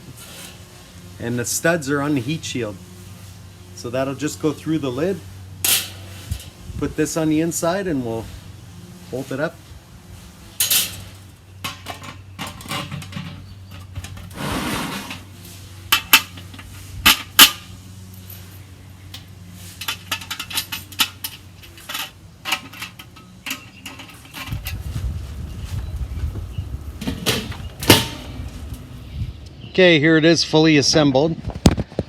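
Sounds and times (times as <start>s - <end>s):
metal scrape: 0.0s - 3.6s, 5.0s - 7.2s, 10.1s - 25.9s, 27.0s - 29.2s.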